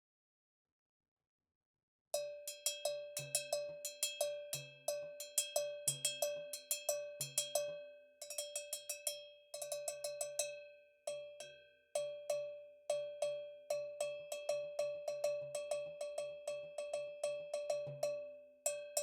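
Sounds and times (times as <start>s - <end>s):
cowbell struck rhythmically: 2.2s - 10.5s.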